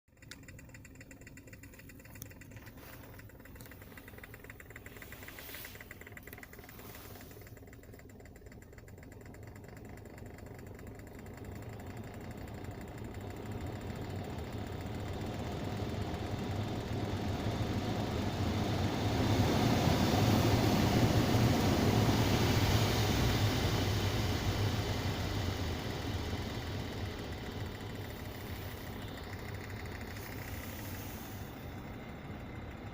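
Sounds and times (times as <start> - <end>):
heater blower fan air rush: 2.4 - 7.9, 13.4 - 32.9.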